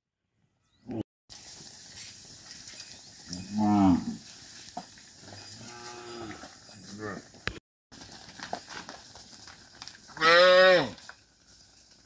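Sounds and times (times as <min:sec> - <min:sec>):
cattle mooing: 0:03.4 - 0:04.2, 0:05.6 - 0:06.5, 0:10.2 - 0:11.0.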